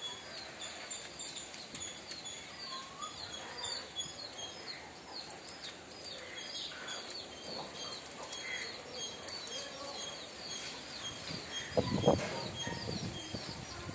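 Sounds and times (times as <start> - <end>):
faint outdoor background noise: 0.0 - 13.9
small birds chirping: 0.0 - 13.9.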